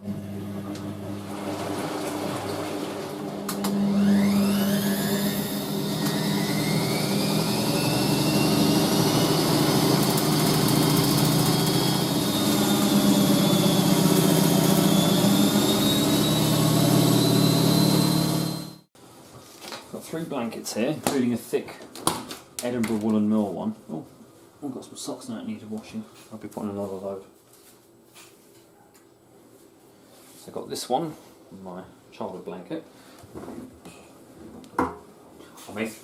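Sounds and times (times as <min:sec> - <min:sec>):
washing machine motor whine: 0:00.0 - 0:18.9.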